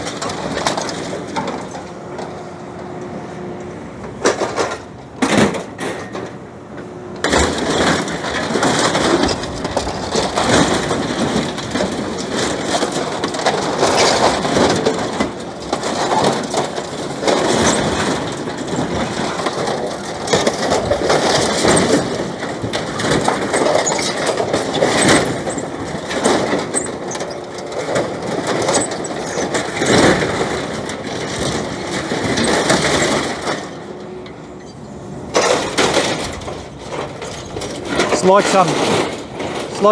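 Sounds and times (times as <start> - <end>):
diesel engine under load: 0.0 - 39.9
metal crunching: 7.3 - 34.0, 35.3 - 39.9.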